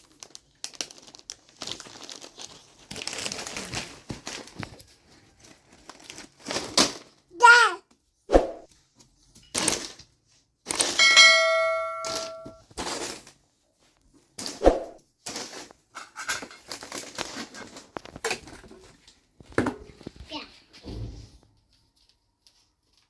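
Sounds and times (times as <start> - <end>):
knocks and handling sounds: 10.8 - 13.0
metal object clanging: 11.0 - 12.6.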